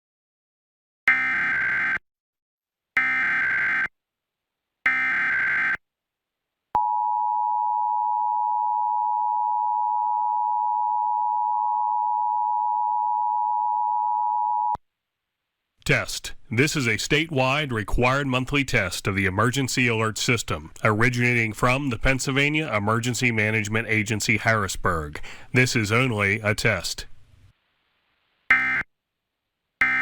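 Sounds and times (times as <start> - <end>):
harsh steady alert beep: 28.5 - 28.9.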